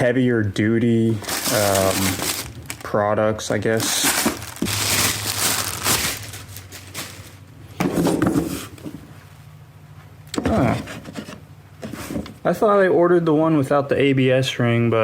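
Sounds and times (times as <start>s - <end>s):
plastic packaging crinkling: 1.1s - 7.6s.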